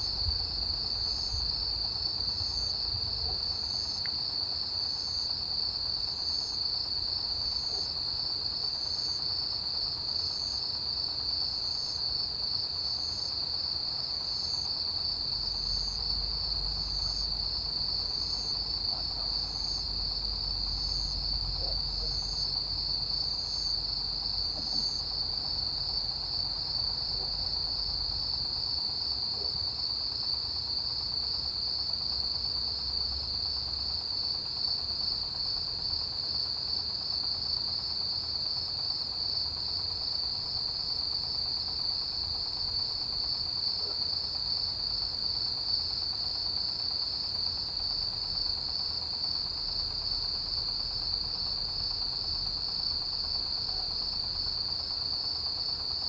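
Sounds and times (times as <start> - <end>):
insect chirping: 0.0 - 56.0
faint quick insect pulsing: 21.0 - 29.7.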